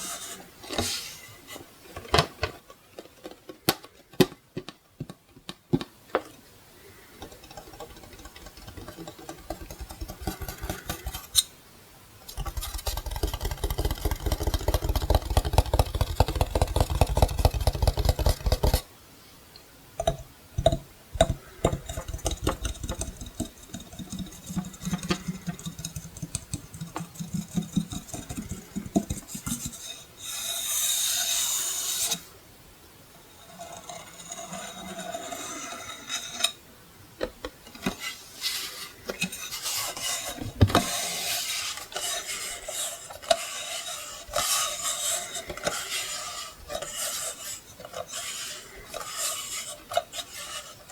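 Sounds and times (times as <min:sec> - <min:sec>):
fast scratching strokes: 0:07.3 - 0:11.5, 0:12.3 - 0:18.8, 0:38.0 - 0:50.9
hissing rub: 0:38.0 - 0:50.9.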